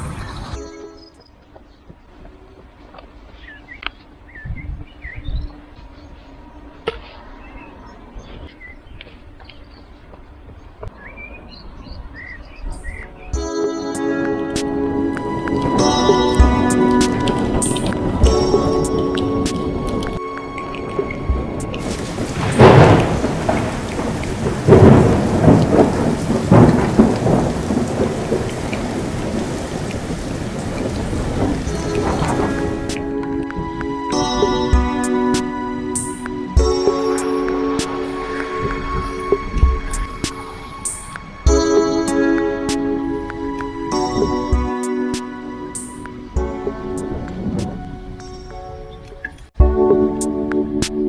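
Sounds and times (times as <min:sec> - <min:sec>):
small birds chirping: 0:00.0 - 0:13.4, 0:15.5 - 0:32.9
heavy rain hissing: 0:14.6 - 0:44.5.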